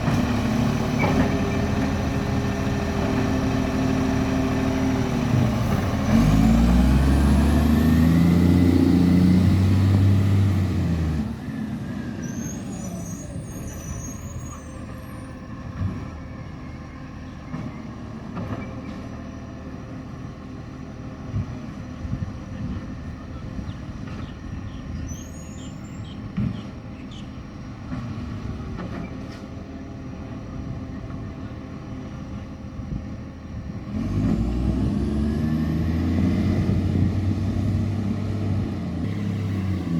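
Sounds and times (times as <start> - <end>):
garbage truck engine: 0.0 - 39.9
clunks: 17.5 - 19.2.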